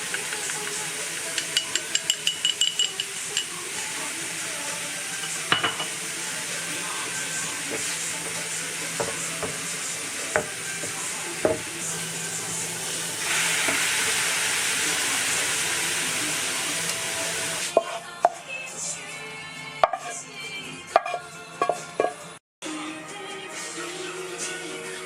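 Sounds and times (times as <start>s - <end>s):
food sizzling in a frying pan: 0.0s - 18.1s
utensil tapping against pan: 0.1s - 3.5s.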